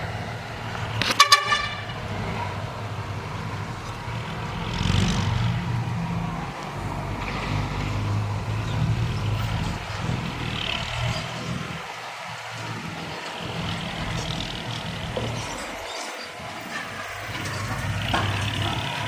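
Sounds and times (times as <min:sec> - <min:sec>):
diesel machinery running: 0:00.0 - 0:19.0
vehicle horn toots: 0:01.0 - 0:02.1.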